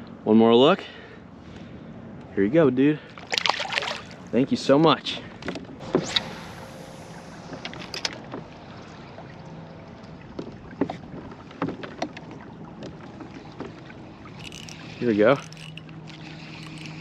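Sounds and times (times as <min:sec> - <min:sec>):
small water splashes and drips: 0:03.1 - 0:04.2.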